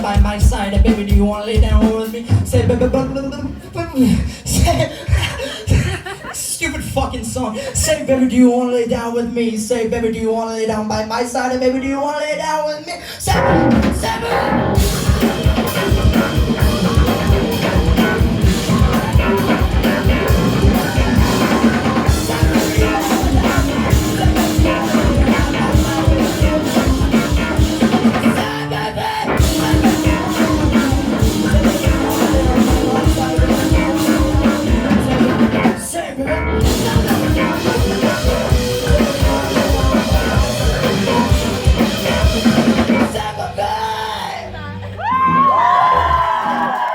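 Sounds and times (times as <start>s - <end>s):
live rock band playing: 0.0s - 3.3s, 13.3s - 44.9s.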